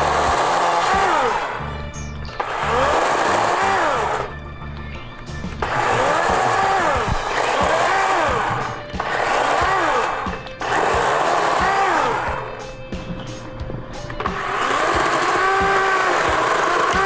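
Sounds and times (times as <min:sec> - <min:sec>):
short rising and falling tones: 0:00.0 - 0:04.4, 0:05.6 - 0:12.6
stepping bass line: 0:05.3 - 0:17.0.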